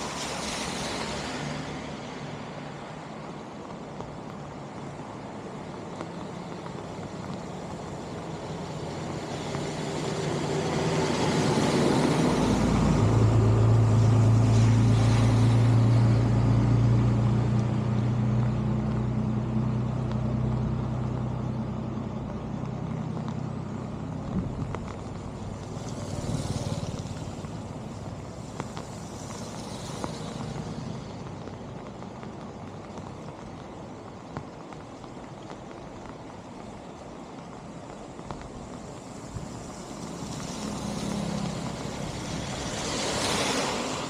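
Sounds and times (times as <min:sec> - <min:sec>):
vehicle engine passing by: 0:08.6 - 0:18.5, 0:25.5 - 0:28.2, 0:39.7 - 0:44.0.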